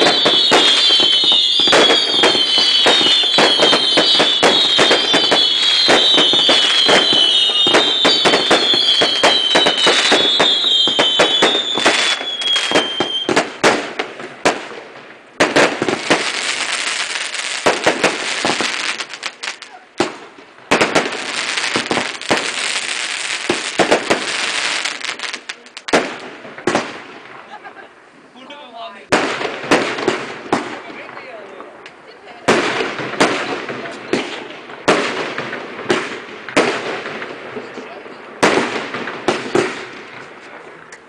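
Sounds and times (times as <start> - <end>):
firework whistles: 0.0 - 13.8
firework bangs: 0.0 - 27.8, 29.1 - 41.0
firework crackling: 0.0 - 41.0.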